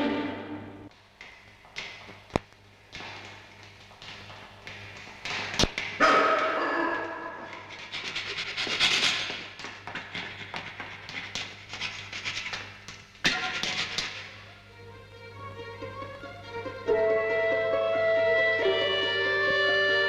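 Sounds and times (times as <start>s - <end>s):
steady low hum: 0.0s - 20.0s
dog barking and whimpering: 6.0s - 7.8s.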